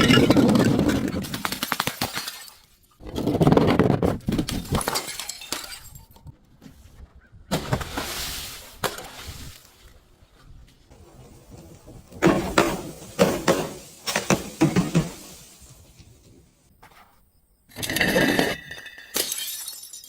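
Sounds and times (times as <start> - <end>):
glass crushing and breaking: 0.0 - 3.0, 4.5 - 6.3, 17.7 - 20.0.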